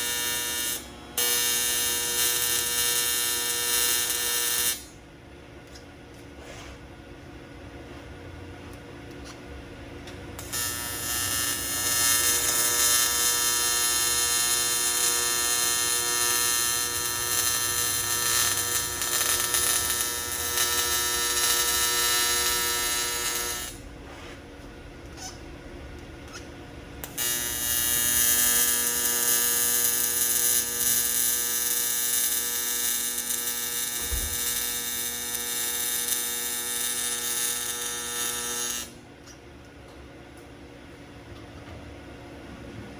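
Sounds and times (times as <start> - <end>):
welding arc buzzing with hiss: 0.0 - 5.0, 10.0 - 24.0, 26.3 - 39.4.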